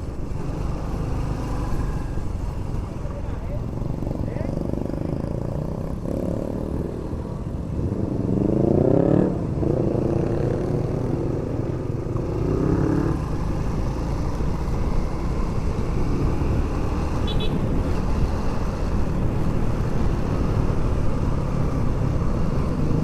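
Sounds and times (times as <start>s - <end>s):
road and wind rumble: 0.0s - 23.0s
motorcycle engine accelerating: 7.8s - 23.0s.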